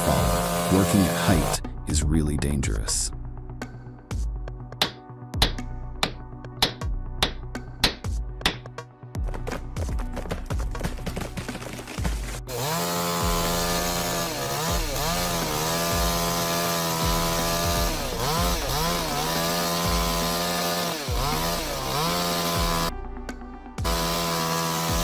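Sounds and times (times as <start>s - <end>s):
chainsaw cutting wood: 0.0s - 1.6s, 9.5s - 22.9s, 23.8s - 25.0s.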